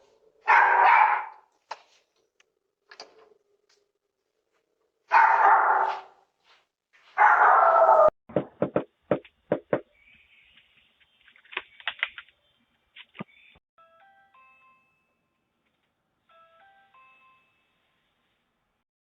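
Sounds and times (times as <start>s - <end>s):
dog barking: 0.4s - 1.5s, 5.1s - 6.2s, 7.2s - 8.1s.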